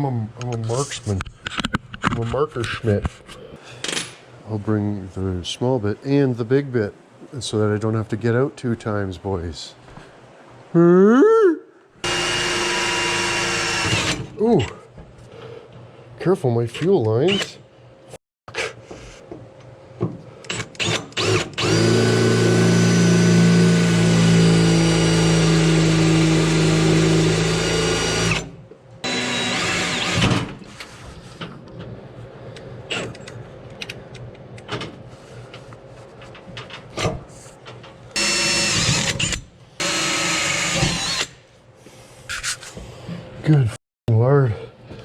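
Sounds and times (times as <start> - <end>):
clicks and handling noise: 0.4 - 3.3
power drill boring into metal: 12.0 - 14.3, 20.5 - 30.4, 38.2 - 41.4.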